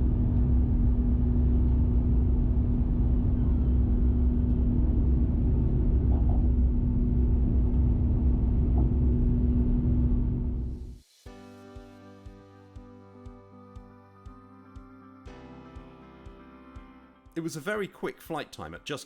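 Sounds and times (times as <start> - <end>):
airliner engines rumbling: 0.1 - 10.6.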